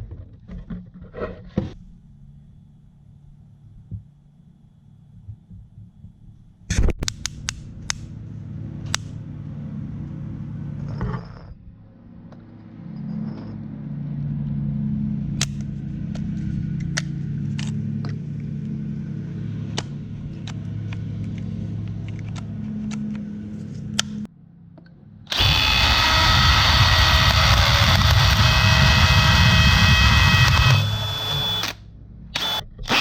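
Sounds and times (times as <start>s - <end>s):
hammer drill drilling into brick: 25.3s - 31.8s, 32.4s - 33.0s.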